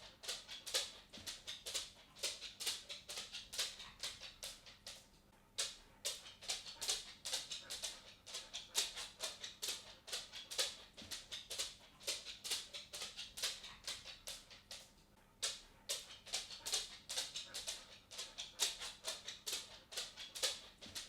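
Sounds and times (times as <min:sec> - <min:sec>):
cat footsteps: 0:00.0 - 0:21.0.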